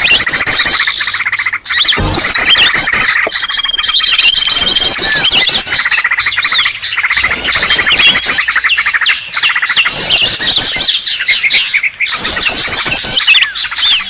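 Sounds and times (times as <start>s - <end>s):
birds chattering and whistling: 0.0s - 14.0s.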